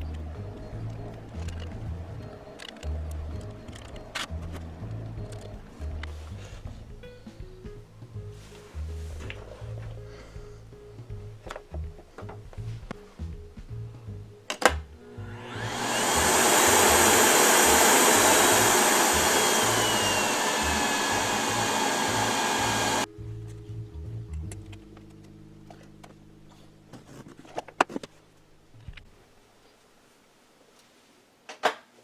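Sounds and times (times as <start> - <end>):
vacuum cleaner motor whine: 15.0 - 23.1.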